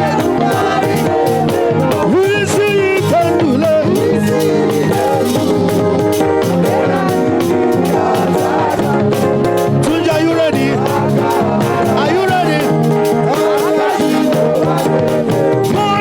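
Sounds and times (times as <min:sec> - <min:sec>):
band playing praise music: 0:00.0 - 0:16.0
voices singing: 0:00.0 - 0:16.0.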